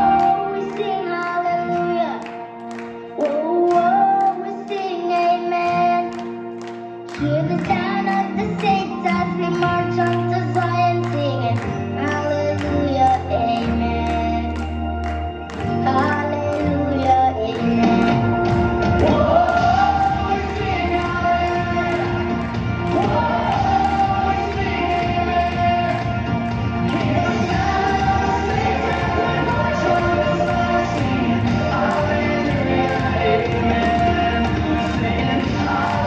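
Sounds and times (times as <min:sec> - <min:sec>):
upbeat pop song: 0:00.0 - 0:36.0
deep bass line: 0:11.5 - 0:36.0.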